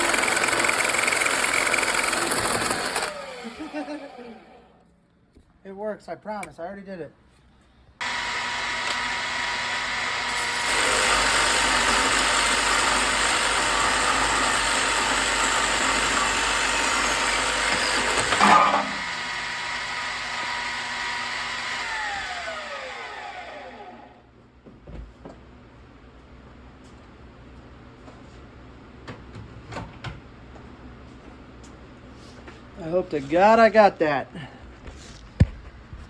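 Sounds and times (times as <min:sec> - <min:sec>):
harsh metal cutting noise: 0:00.0 - 0:04.4, 0:08.0 - 0:23.8
lathe motor whine: 0:00.0 - 0:04.7, 0:08.0 - 0:24.2
motor winding down: 0:00.0 - 0:04.8, 0:08.0 - 0:24.2.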